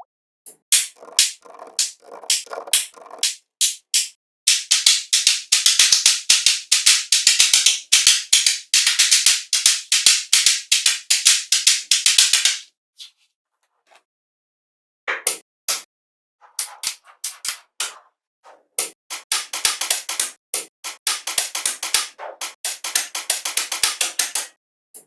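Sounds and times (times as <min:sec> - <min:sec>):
sharp percussive clicks: 0:00.5 - 0:12.6, 0:18.8 - 0:25.0.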